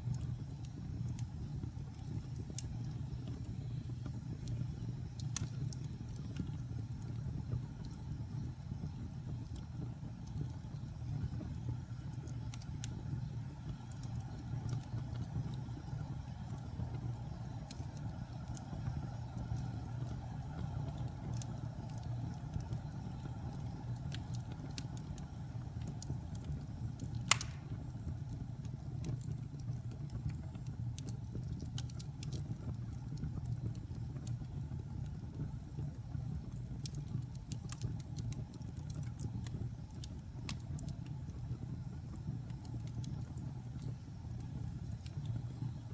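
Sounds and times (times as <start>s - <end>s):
fire crackling: 0.0s - 45.9s
loud sharp pop: 27.3s - 27.8s.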